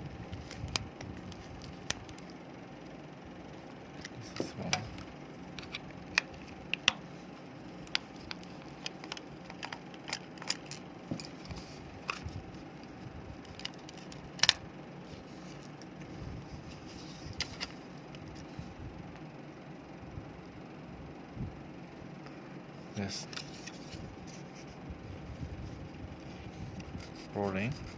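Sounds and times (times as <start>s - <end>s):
plastic parts clicking: 7.8s - 11.4s, 13.4s - 14.6s.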